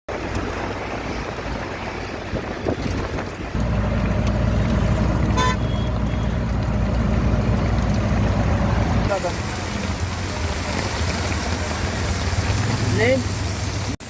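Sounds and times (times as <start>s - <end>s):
low train rumble: 0.1s - 14.0s
short horn toot: 5.3s - 6.4s.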